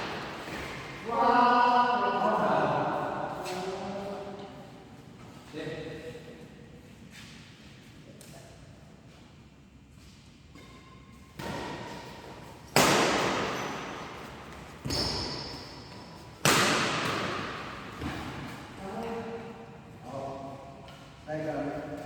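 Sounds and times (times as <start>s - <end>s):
sharp bangs ringing in a hall: 12.7s - 18.5s.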